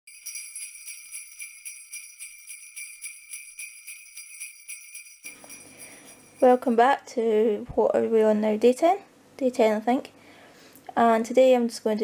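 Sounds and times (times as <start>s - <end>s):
sleigh bells jingling: 0.0s - 7.0s.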